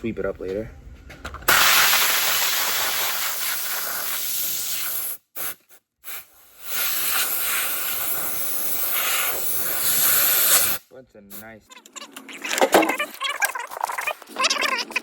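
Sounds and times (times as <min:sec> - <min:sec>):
compressed air hissing: 0:01.5 - 0:11.5.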